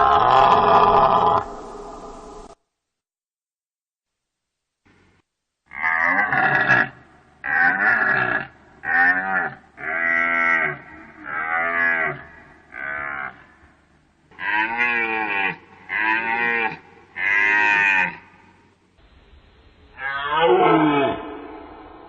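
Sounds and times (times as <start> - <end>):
deer calling: 5.8 - 18.5.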